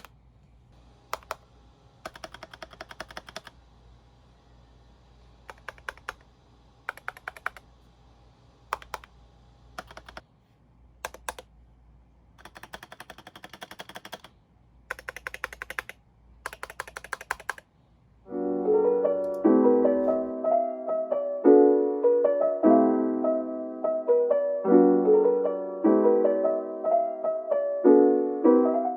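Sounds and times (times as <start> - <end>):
mechanical keyboard key clacks: 11.0 - 11.5, 12.4 - 14.3, 14.9 - 17.6
piano music: 18.3 - 28.9.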